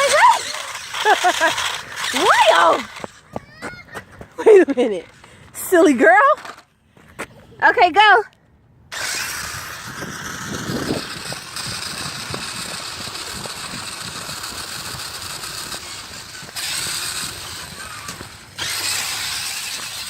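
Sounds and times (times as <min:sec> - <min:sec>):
toy car motor whirring: 0:00.0 - 0:03.7, 0:06.3 - 0:06.7, 0:08.9 - 0:20.0
wheels rattling over ground: 0:00.0 - 0:06.7, 0:08.9 - 0:20.0.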